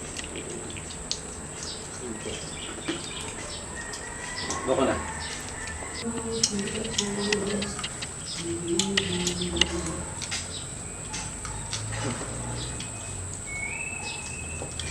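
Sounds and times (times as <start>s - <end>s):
pigeons cooing: 0.0s - 14.9s
sharp clicks and taps: 6.4s - 10.5s.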